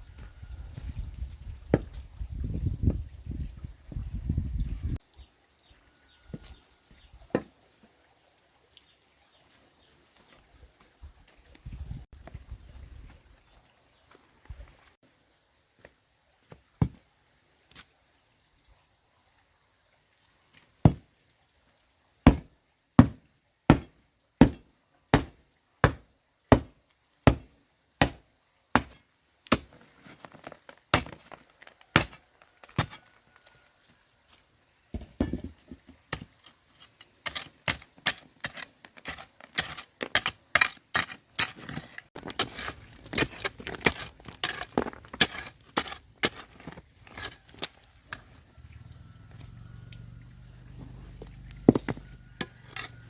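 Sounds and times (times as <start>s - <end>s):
blade chopping on wooden board: 22.3s - 24.6s, 25.2s - 26.7s, 27.3s - 28.2s, 28.8s - 29.7s.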